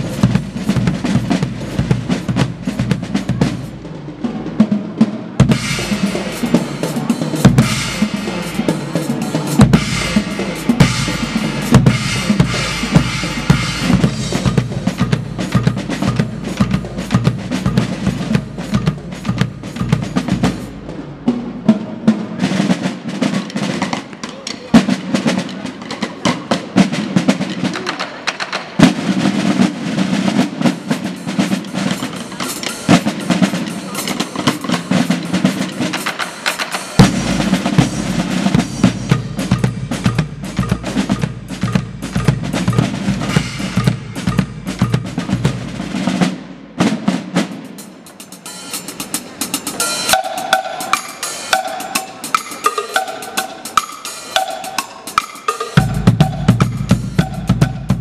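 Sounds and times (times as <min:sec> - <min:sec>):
pitched percussion pattern: 0:00.0 - 0:58.0
snare drum rolls: 0:00.0 - 0:58.0
bass drum: 0:09.5 - 0:20.7, 0:37.0 - 0:46.2, 0:55.8 - 0:58.0.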